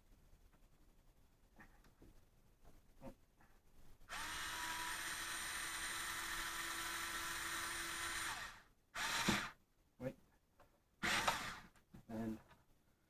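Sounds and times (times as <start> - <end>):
cordless screwdriver whining: 4.1 - 9.5, 11.0 - 11.7.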